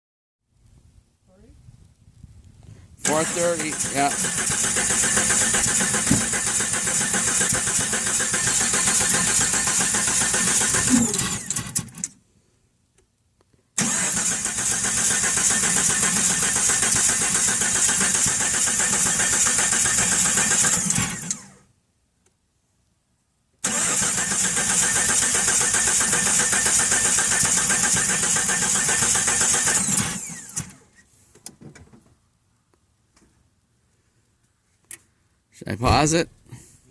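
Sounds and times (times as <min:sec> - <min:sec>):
car engine cranking on starter: 0:03.0 - 0:12.1, 0:13.8 - 0:21.6, 0:23.6 - 0:31.0.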